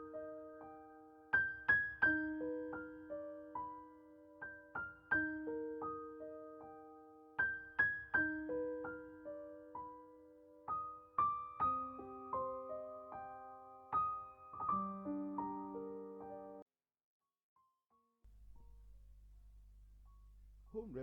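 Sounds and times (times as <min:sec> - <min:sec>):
gentle piano melody: 0:00.0 - 0:16.7.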